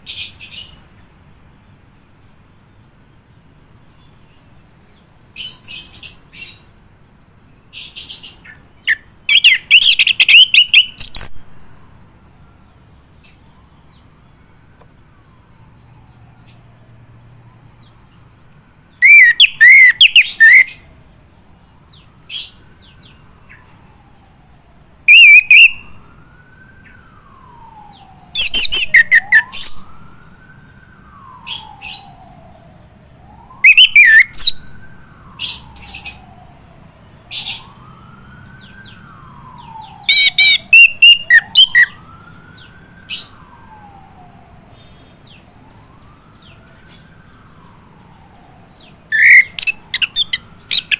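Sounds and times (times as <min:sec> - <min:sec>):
faint sweeping whistle: 0:25.1 - 0:36.5, 0:37.3 - 0:45.4, 0:46.0 - 0:50.9.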